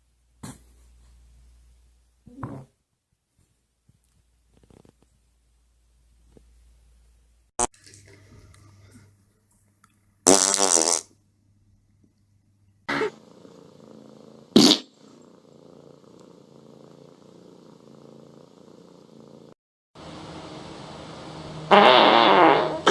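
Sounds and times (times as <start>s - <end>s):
fart noises: 10.2s - 11.1s, 12.9s - 13.2s, 14.5s - 14.9s, 21.7s - 22.9s.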